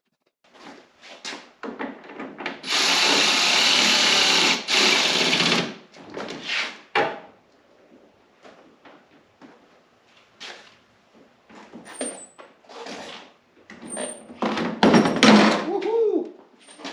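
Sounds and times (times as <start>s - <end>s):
parts knocking and clattering: 1.6s - 2.6s, 13.7s - 15.7s
power drill running: 2.6s - 5.8s.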